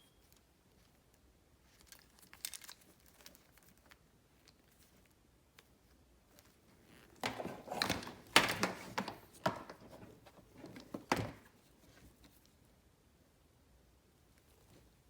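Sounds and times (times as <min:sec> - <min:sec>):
packaging rustling: 0:01.8 - 0:04.0, 0:07.0 - 0:11.5
parts knocking and thunking: 0:07.2 - 0:11.5.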